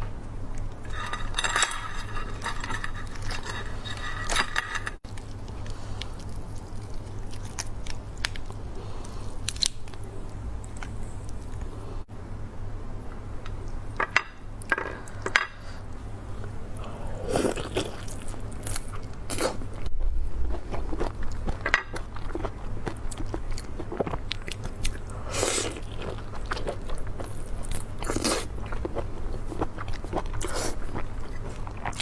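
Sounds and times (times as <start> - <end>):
steady low hum: 0.0 - 32.0
chewing meat crunches: 5.0 - 11.7, 16.8 - 32.0.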